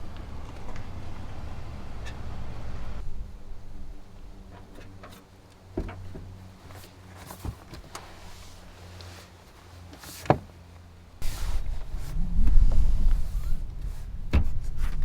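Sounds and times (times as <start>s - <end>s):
low steady hum: 0.0s - 15.0s.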